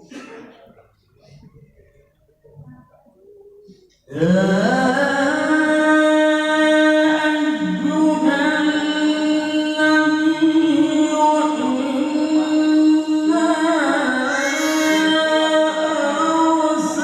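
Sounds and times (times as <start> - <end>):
man reciting in melodic style: 4.1 - 17.0.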